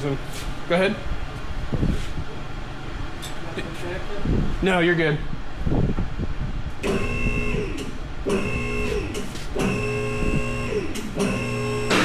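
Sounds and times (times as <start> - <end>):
hydraulic lift motor humming and whining: 6.8 - 12.0.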